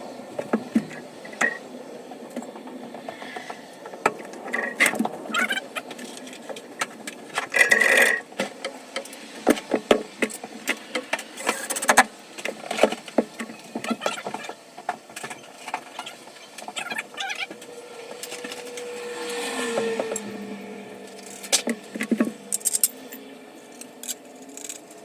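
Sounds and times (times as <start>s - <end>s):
tools and metal parts clicking: 4.5s - 9.2s, 21.0s - 25.0s
tone sliding lower: 16.9s - 24.2s.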